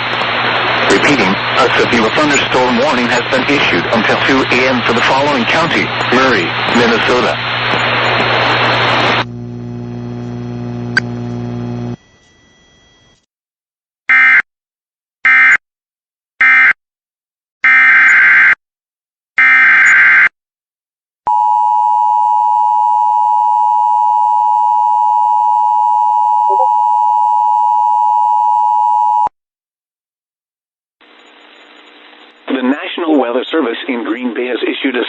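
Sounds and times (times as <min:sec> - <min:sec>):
two-tone attention signal: 0:26.4 - 0:26.9.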